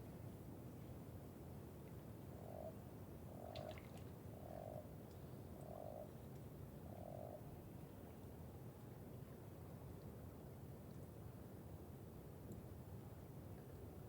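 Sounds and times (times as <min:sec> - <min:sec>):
frog croaking: 0:02.4 - 0:02.8, 0:04.4 - 0:04.8, 0:05.7 - 0:06.1, 0:07.0 - 0:07.4.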